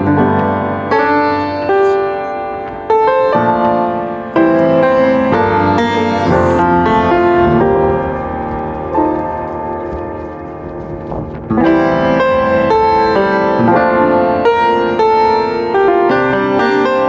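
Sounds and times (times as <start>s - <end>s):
piano playing chords: 0.0s - 9.8s.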